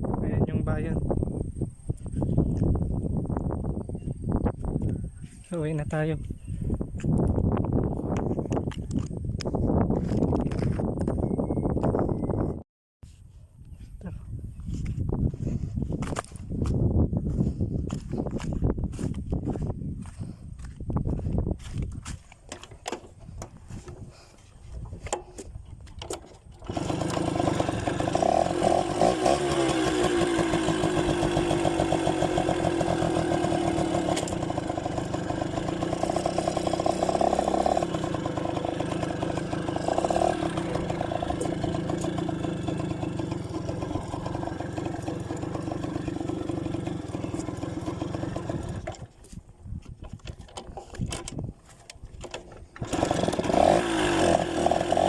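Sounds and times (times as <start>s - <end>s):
engine clicks: 24.8s - 28.3s, 29.7s - 37.1s
two-stroke engine running: 26.0s - 49.2s, 52.7s - 55.0s.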